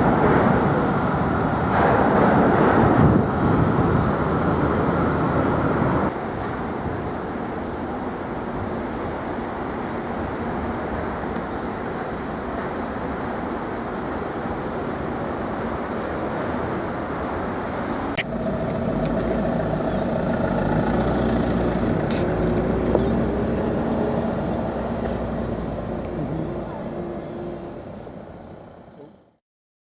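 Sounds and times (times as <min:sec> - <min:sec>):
vehicle running noise: 0:17.7 - 0:29.1
deep engine rumble: 0:18.0 - 0:29.1.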